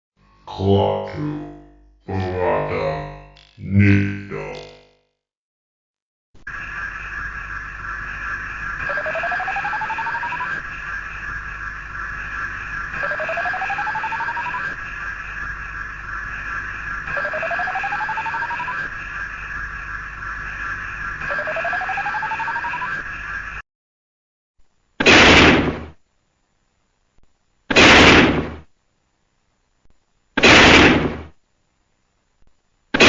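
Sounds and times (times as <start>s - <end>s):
electronic pulsing hum: 0.2s - 5.0s, 6.5s - 23.6s
rising electronic tone: 0.9s - 5.0s.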